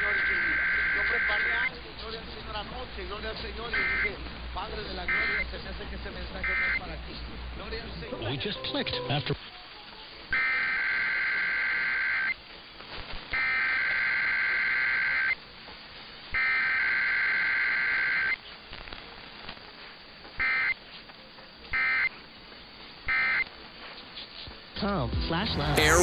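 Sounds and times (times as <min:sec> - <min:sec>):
short end-of-message bursts: 0:25.5 - 0:26.0.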